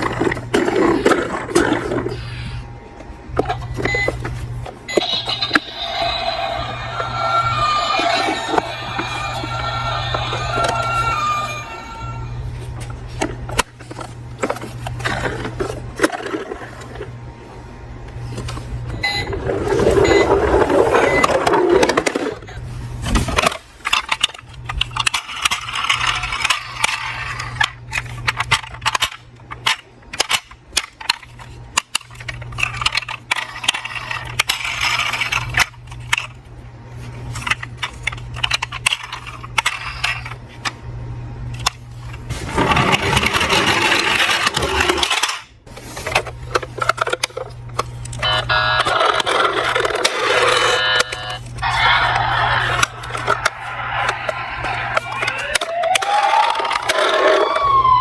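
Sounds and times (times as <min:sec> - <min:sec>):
steady low hum: 0:00.0 - 0:58.0
toy cars clicking and rattling: 0:23.4 - 0:36.3, 0:37.4 - 0:40.4, 0:42.6 - 0:45.4, 0:51.8 - 0:57.6.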